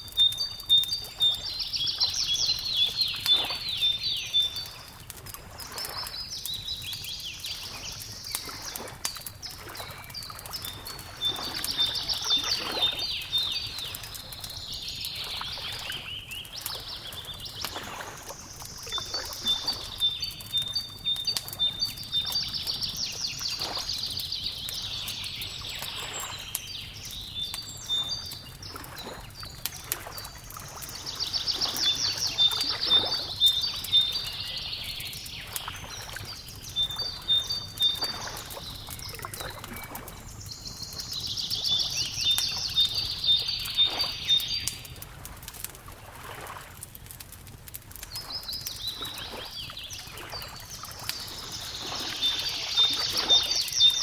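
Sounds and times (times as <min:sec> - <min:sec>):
wood fire crackling: 0:00.0 - 0:54.0
songbird trilling: 0:00.1 - 0:04.8, 0:18.8 - 0:28.3, 0:31.0 - 0:44.9, 0:48.8 - 0:54.0.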